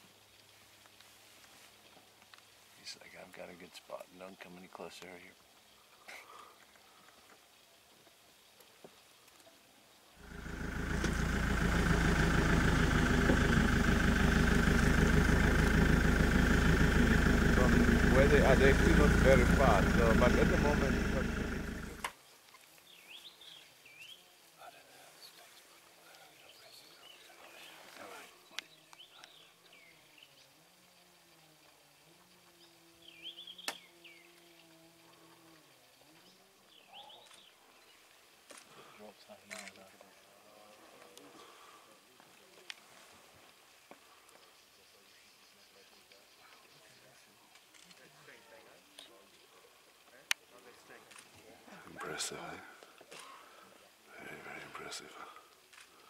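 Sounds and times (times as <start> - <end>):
low steady hum: 10.2 - 22.1
vehicle engine idling: 10.2 - 22.1.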